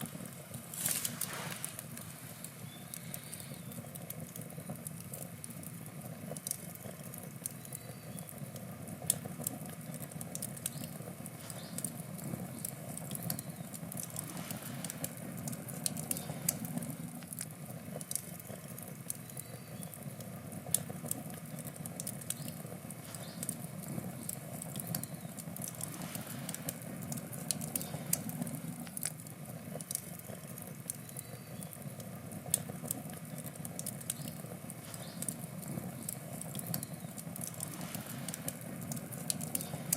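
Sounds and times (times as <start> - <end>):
low rush of flame: 0.0 - 7.0, 31.8 - 39.9
wood crackling and popping: 0.0 - 39.9.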